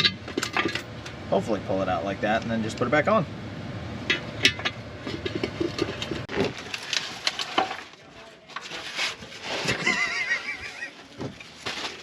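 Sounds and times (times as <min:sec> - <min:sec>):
metal tools knocking and clinking: 0:00.0 - 0:00.9.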